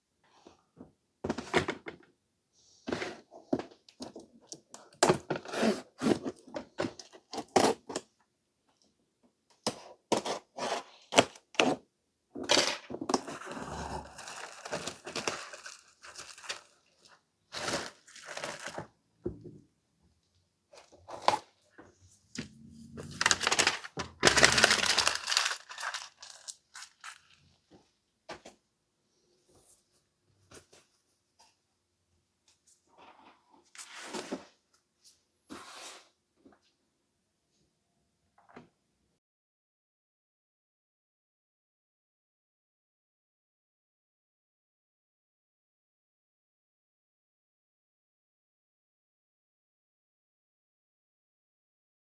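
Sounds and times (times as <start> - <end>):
rustling: 21.1 - 27.5.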